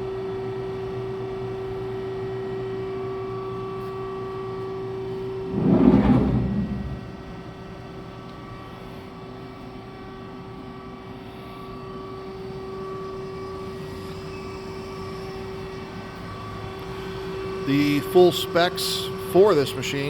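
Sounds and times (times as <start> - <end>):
thump with short rumble: 5.5 - 7.6.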